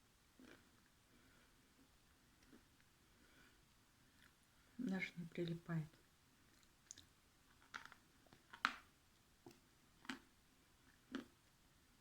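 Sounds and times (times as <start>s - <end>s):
dry clay crunching when chewed: 0.4s - 0.9s, 6.5s - 11.5s.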